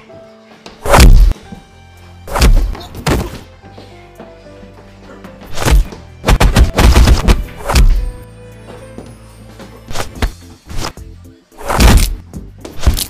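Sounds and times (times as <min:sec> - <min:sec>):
punch and kick impacts: 0:00.8 - 0:01.4, 0:02.3 - 0:03.4, 0:05.5 - 0:08.1, 0:11.6 - 0:13.0.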